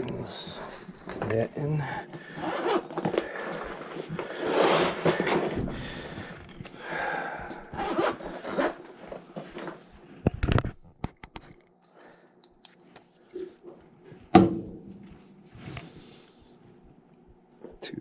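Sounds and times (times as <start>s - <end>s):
rustling and scraping handling noises: 0.0s - 6.8s, 7.5s - 10.8s.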